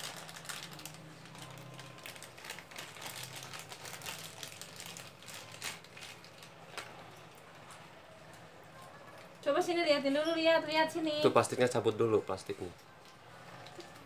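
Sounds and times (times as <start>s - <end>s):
plastic packaging rustling: 0.0s - 7.8s.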